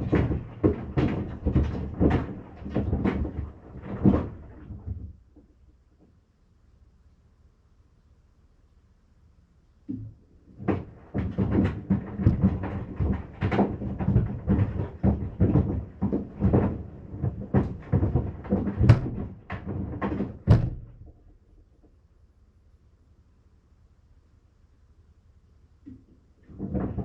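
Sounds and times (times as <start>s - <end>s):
sandals knocking in washing machine: 0.0s - 5.5s, 9.9s - 21.5s, 25.9s - 27.0s.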